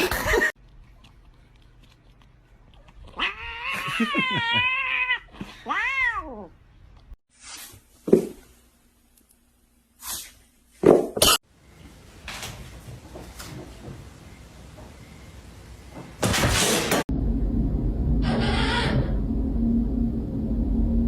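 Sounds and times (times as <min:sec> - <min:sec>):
cat yowling: 0:03.1 - 0:06.5.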